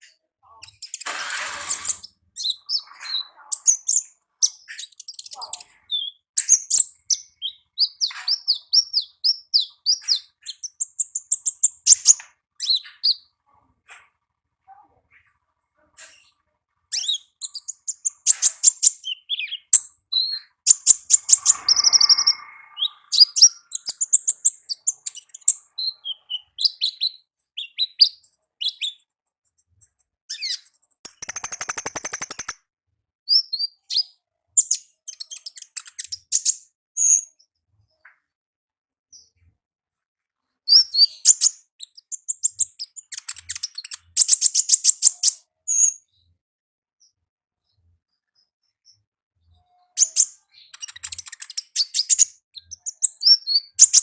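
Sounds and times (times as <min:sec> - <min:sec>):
bird chirping and trilling: 0:00.6 - 0:13.2, 0:16.9 - 0:28.1, 0:30.3 - 0:32.6
bird buzzy rattle: 0:00.9 - 0:02.1, 0:31.1 - 0:32.6.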